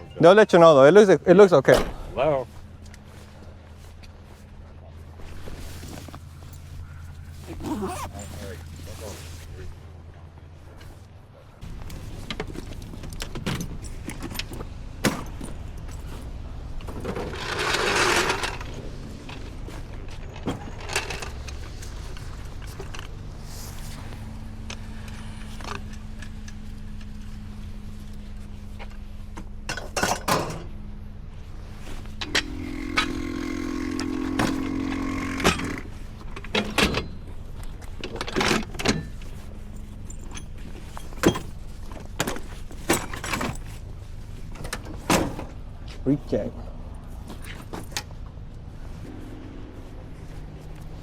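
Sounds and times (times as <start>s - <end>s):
small electric motor whirring: 32.3s - 35.9s
metal tools clinking: 36.4s - 43.9s.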